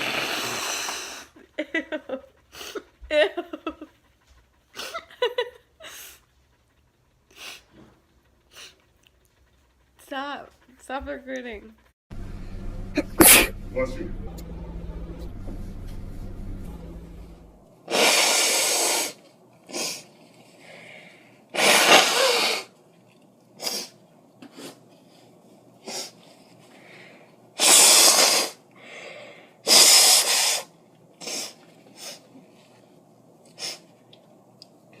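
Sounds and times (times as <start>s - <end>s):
sniffs and breaths: 0.0s - 12.0s, 17.8s - 34.2s
girl sneezing: 13.0s - 13.5s, 21.6s - 22.7s.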